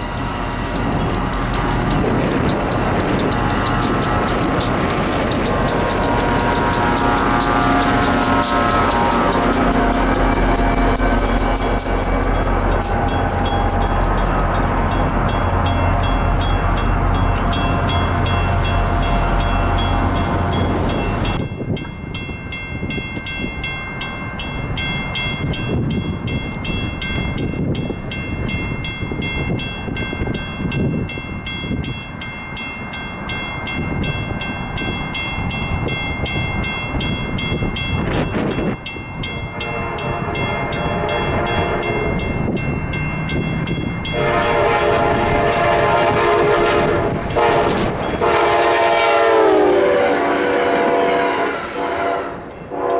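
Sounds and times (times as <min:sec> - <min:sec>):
train horn: 0:00.0 - 0:21.4, 0:39.5 - 0:42.4, 0:44.1 - 0:52.9
diesel locomotive engine: 0:00.0 - 0:52.9
rail cars rumbling and clicking: 0:00.0 - 0:52.9.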